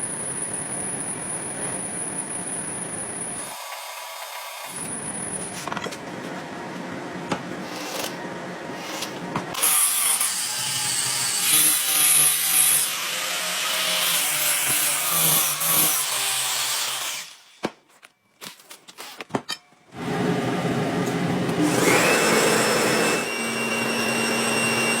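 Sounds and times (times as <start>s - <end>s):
steady tool whine: 20.0s - 25.0s.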